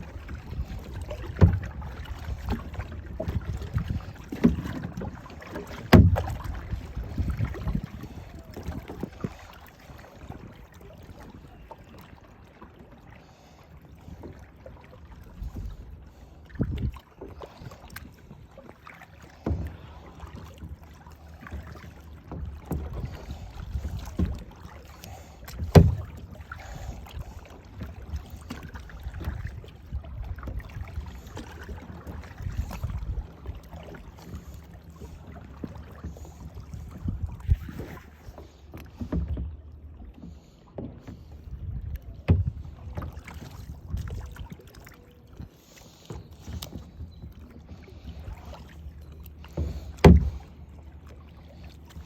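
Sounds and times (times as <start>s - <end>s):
water sloshing: 0.0s - 52.0s
knocks against kayak: 1.3s - 1.8s, 4.3s - 7.0s, 25.5s - 26.2s, 42.2s - 42.7s, 49.6s - 50.5s.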